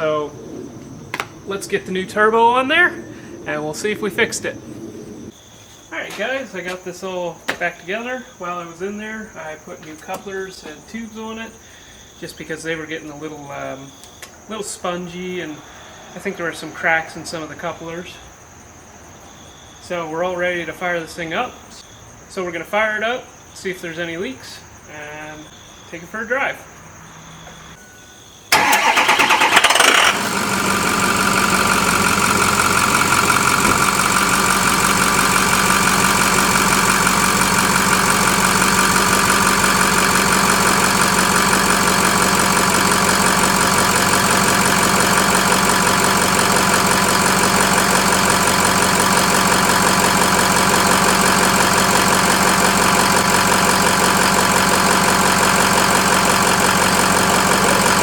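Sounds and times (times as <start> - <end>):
diesel engine starting and idling: 28.5 - 58.0.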